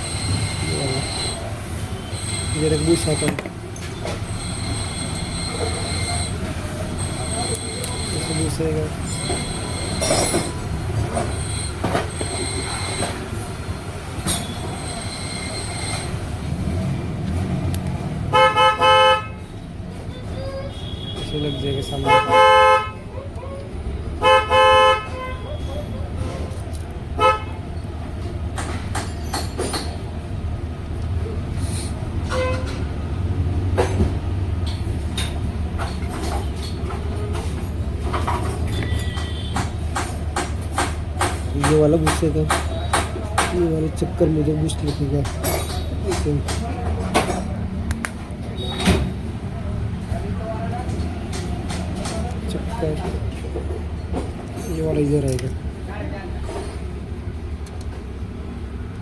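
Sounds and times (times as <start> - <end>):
traffic rumble: 0.0 - 59.0
vehicle horn honking: 18.3 - 19.4, 20.6 - 23.0, 24.2 - 25.7, 27.2 - 27.6, 32.3 - 32.8, 38.7 - 39.6, 48.6 - 49.1.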